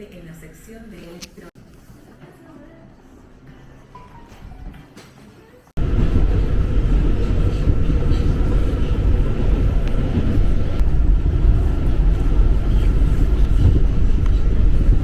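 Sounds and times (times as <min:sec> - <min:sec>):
subway train rumbling: 0:05.8 - 0:15.0.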